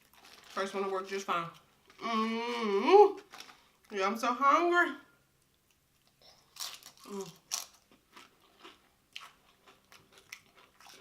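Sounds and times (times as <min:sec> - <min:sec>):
crunchy chip chewing: 0:06.0 - 0:11.0.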